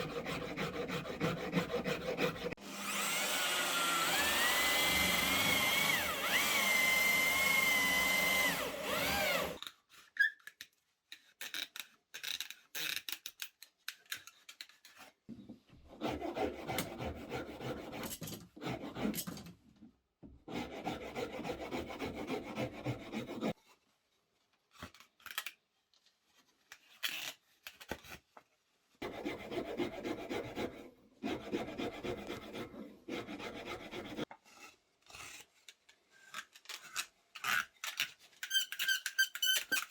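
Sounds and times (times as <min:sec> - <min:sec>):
hand tool rasping wood: 0:00.0 - 0:09.6, 0:15.9 - 0:19.2, 0:20.5 - 0:23.6, 0:29.0 - 0:34.3
power tool whining: 0:02.6 - 0:09.6.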